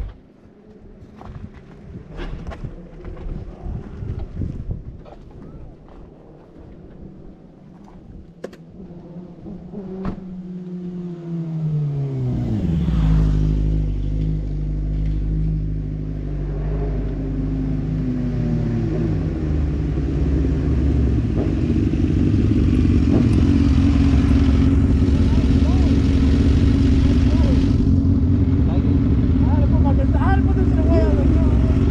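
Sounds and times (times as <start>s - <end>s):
vehicle engine running: 12.6s - 31.9s.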